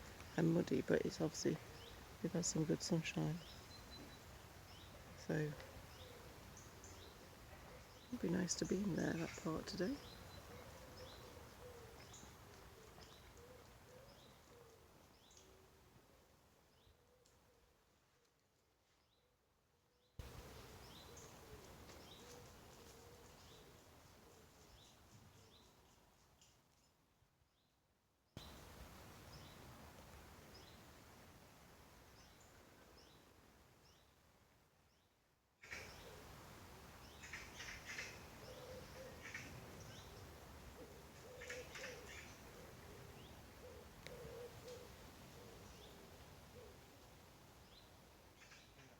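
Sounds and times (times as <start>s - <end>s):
small birds chirping: 0.0s - 15.6s, 20.2s - 27.0s, 28.4s - 29.8s, 34.9s - 46.8s
low background hiss: 0.0s - 48.9s
low cooing bird: 4.9s - 15.8s, 20.2s - 24.8s, 35.6s - 36.4s, 37.1s - 47.0s.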